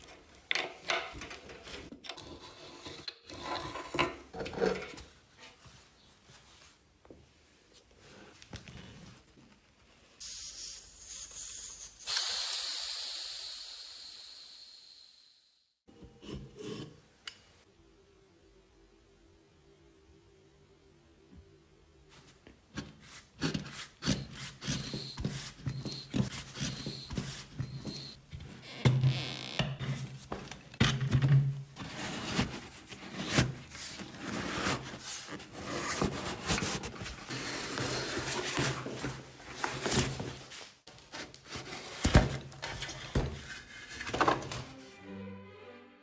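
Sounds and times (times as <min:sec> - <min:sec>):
soft background music: 0:44.2 - 0:46.0.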